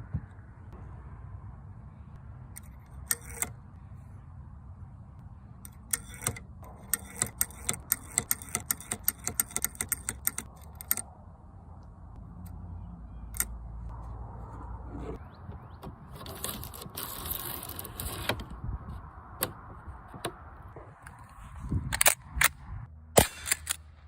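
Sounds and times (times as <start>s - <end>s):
rifle mechanism clicks and rattles: 2.6s - 3.6s, 5.7s - 11.1s, 13.3s - 13.5s, 21.9s - 22.6s, 23.2s - 23.9s.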